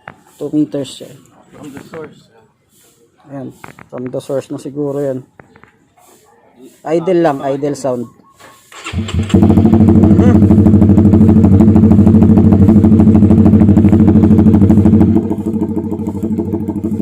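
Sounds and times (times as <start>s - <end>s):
motorcycle engine idling: 8.7s - 17.0s.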